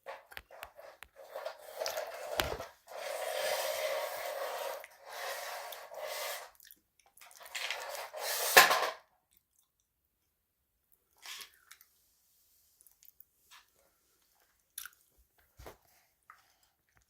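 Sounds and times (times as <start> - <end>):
wet chewing and crunching: 14.3 - 15.1.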